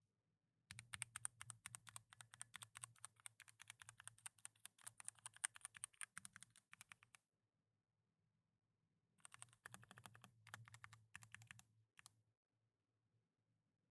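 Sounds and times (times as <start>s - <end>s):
typing on mechanical keyboard: 0.7s - 7.2s, 9.2s - 11.6s.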